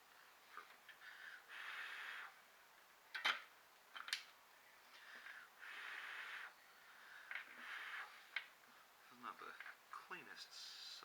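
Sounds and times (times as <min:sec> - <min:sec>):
short soft hisses: 0:07.6 - 0:08.3.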